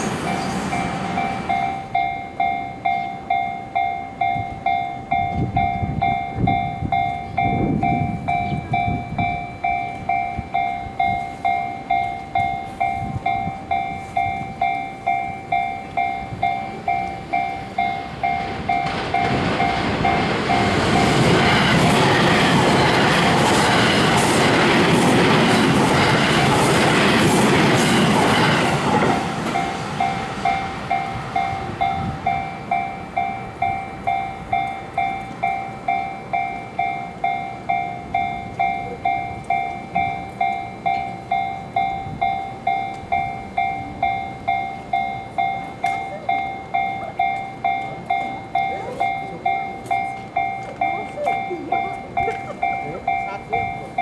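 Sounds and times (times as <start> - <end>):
train rushing past: 0.0 - 2.2, 15.8 - 44.5
railroad crossing warning bell: 0.0 - 54.0.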